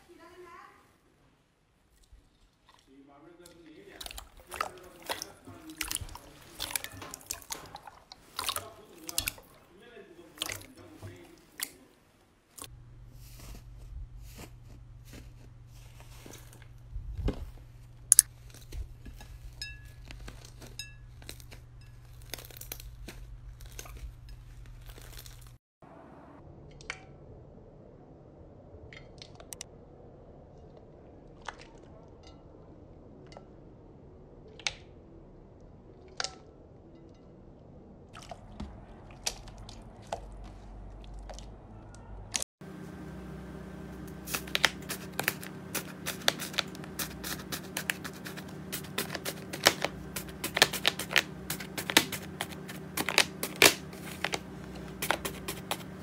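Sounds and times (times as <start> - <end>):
slime crackling and popping: 18.0 - 25.6, 44.0 - 56.0.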